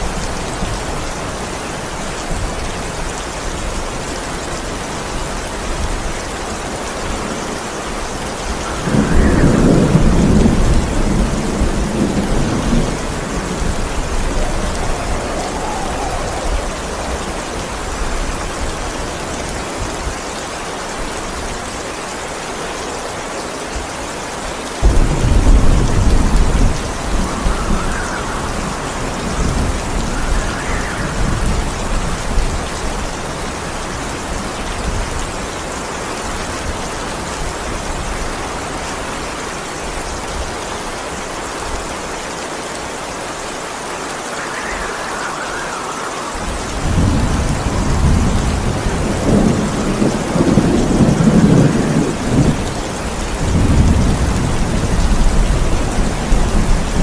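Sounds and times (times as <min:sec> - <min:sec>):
steady rain: 0:00.0 - 0:57.0
thunder rumbling: 0:07.0 - 0:20.2, 0:24.8 - 0:35.5, 0:44.0 - 0:57.0.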